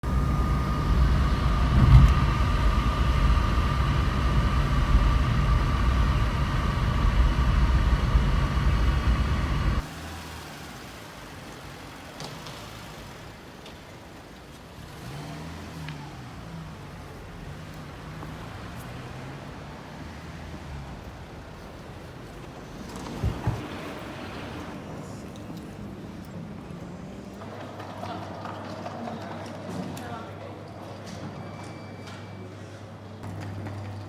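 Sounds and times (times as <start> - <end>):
quiet steady hum: 0.0 - 9.9
loud engine rumble with whine: 0.0 - 13.2, 14.8 - 27.4.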